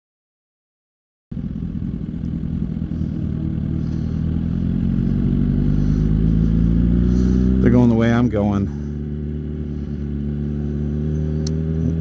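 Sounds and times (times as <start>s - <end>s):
motorcycle engine accelerating: 1.3s - 12.0s.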